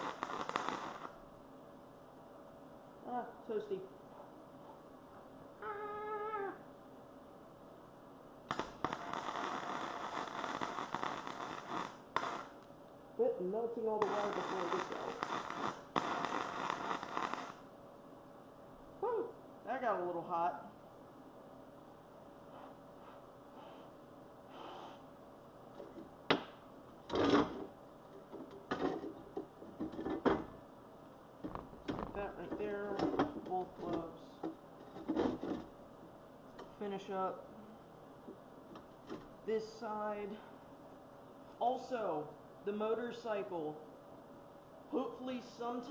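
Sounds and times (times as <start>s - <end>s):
arc welder crackling: 0.0s - 1.2s, 8.5s - 12.8s, 13.8s - 17.7s, 31.4s - 34.0s.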